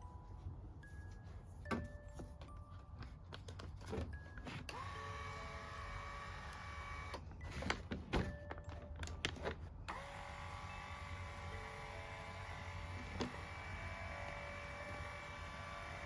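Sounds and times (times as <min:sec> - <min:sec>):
massage motor whirring: 0:04.7 - 0:07.3, 0:09.9 - 0:16.0.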